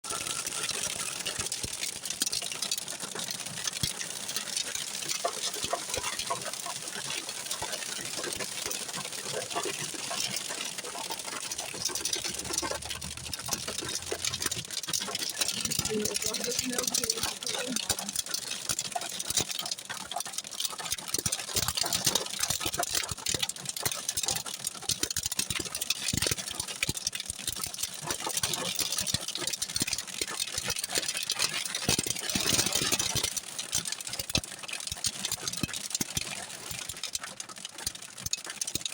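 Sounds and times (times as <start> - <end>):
heavy rain: 0.1 - 18.6
hiss of heavy rain: 0.1 - 38.8
hailstones striking hard surfaces: 0.1 - 38.9.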